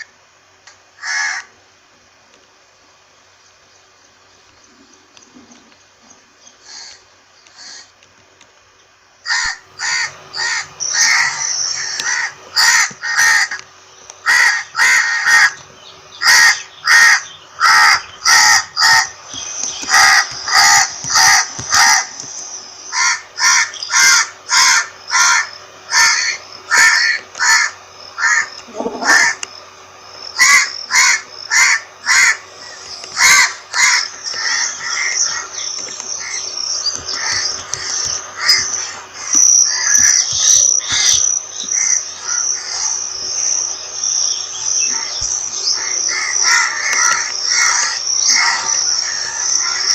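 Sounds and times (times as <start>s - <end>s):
crows cawing: 1.0s - 1.6s, 6.6s - 8.0s, 9.2s - 29.5s, 30.4s - 43.0s, 44.8s - 49.9s.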